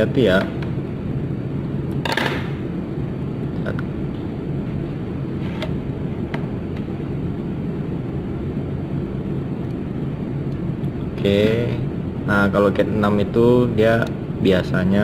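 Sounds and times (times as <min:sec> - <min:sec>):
low background rumble: 0:00.0 - 0:15.0.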